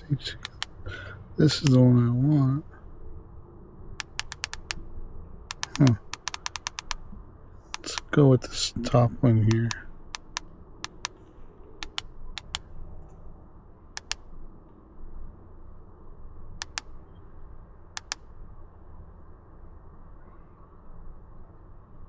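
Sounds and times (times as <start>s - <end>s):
button clicks: 0.0s - 0.8s, 4.0s - 4.8s, 5.5s - 7.0s, 7.8s - 8.1s, 9.5s - 11.2s, 11.8s - 12.6s, 14.0s - 14.2s, 16.6s - 16.9s, 18.0s - 18.2s
faint low hum: 0.0s - 22.0s.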